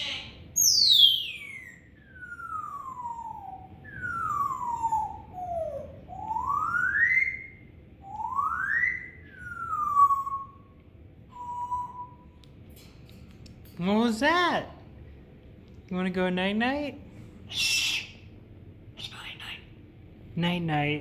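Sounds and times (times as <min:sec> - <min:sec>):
parrot whistling glides: 0:00.6 - 0:12.4.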